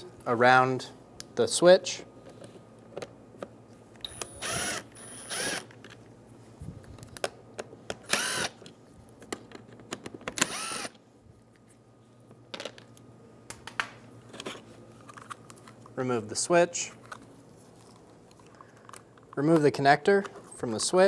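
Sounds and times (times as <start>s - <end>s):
power screwdriver motor whine: 4.0s - 5.7s, 8.1s - 8.6s, 10.4s - 10.9s.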